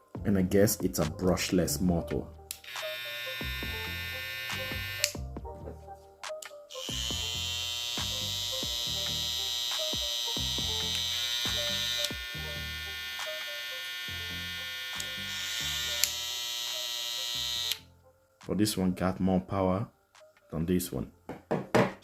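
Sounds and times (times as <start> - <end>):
background music with steady beat: 0.0 - 22.0
hair trimmer whining: 2.6 - 5.2, 6.7 - 17.8.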